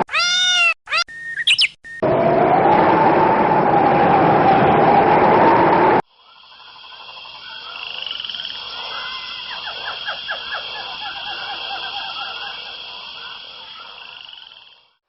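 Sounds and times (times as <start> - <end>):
loud rushing noise: 2.0 - 6.0
frogs calling: 6.1 - 15.0
frogs trilling: 6.1 - 15.0.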